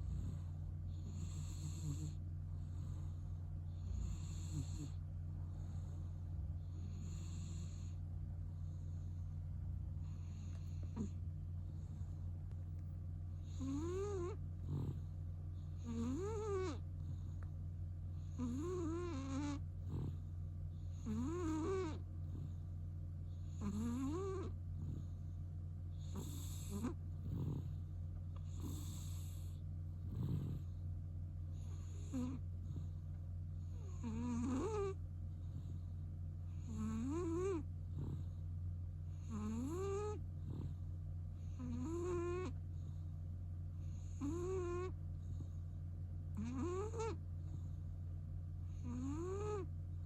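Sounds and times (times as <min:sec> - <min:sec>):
cat snoring with nasal whistle: 0:00.0 - 0:08.0, 0:10.0 - 0:12.2, 0:13.4 - 0:17.4, 0:18.2 - 0:22.7, 0:23.3 - 0:25.3, 0:25.9 - 0:30.8, 0:31.5 - 0:33.0, 0:33.6 - 0:38.4, 0:39.1 - 0:43.1, 0:43.8 - 0:45.6, 0:46.3 - 0:47.8, 0:48.7 - 0:49.7
low hum: 0:04.9 - 0:15.9.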